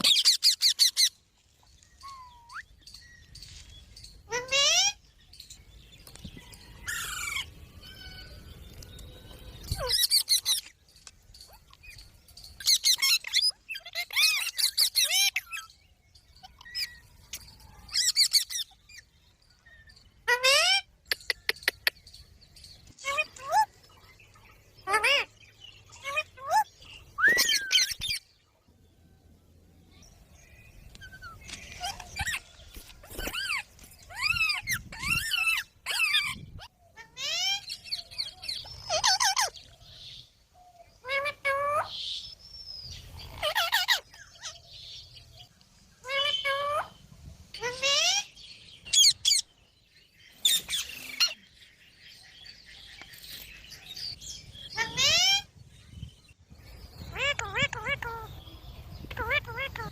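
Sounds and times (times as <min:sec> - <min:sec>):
parrot squawking: 0:24.8 - 0:25.3, 0:54.8 - 0:55.5, 0:57.1 - 0:58.3.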